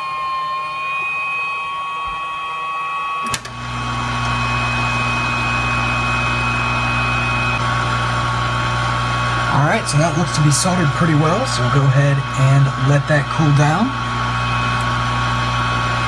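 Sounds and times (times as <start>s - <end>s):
equipment switch click: 3.2s - 3.6s
hot air blowing with hum: 3.2s - 16.0s.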